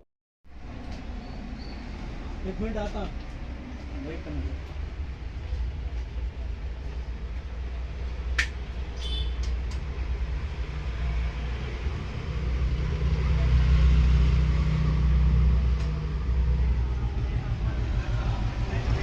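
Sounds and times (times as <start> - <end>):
low rumble: 9.8 - 19.0.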